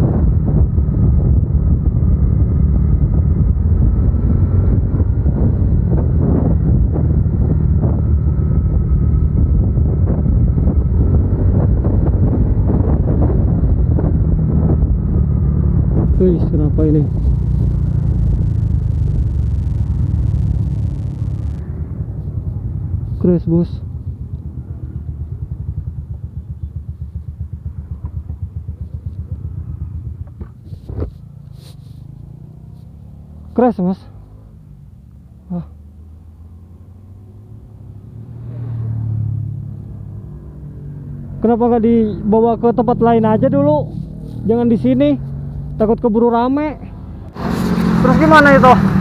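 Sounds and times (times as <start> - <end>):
wind buffeting microphone: 0.0 - 23.1
motorcycle engine running: 0.0 - 33.7
faint steady whine: 17.1 - 23.0.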